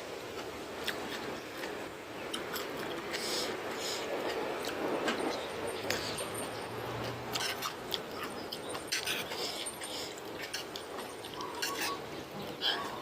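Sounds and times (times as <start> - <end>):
person chewing food: 0.4 - 4.8, 7.0 - 13.0.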